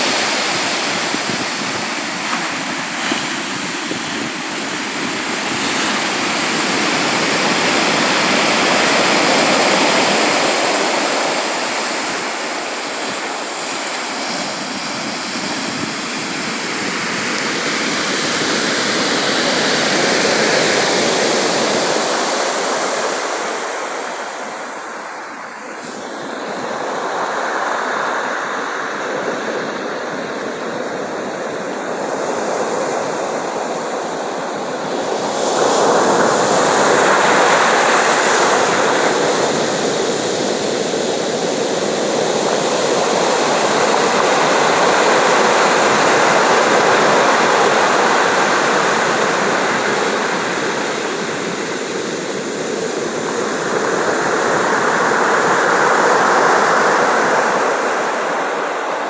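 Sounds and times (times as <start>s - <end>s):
sea waves washing in: 0.0s - 59.0s.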